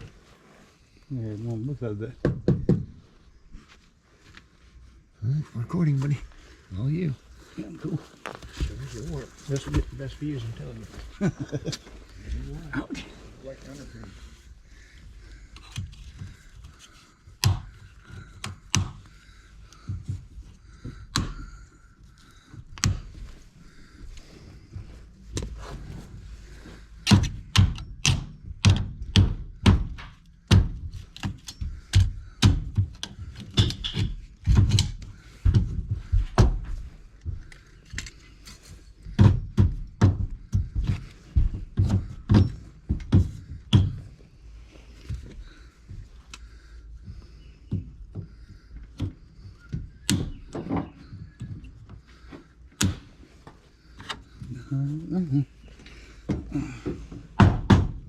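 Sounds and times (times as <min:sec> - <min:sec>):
hammer knocking on wood: 0:02.2 - 0:03.0, 0:27.1 - 0:30.8, 0:39.2 - 0:44.0, 0:57.4 - 0:58.0.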